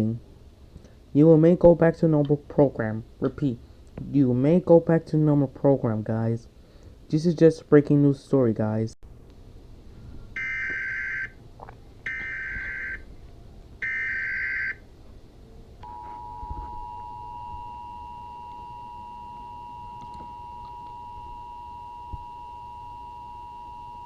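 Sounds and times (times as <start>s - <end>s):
two-tone attention signal: 15.8s - 24.0s.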